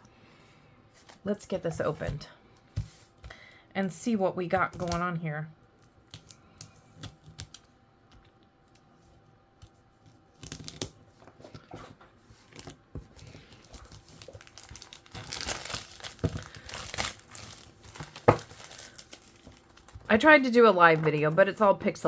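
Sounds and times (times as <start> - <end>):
packaging crinkling and tearing: 10.0 - 21.3.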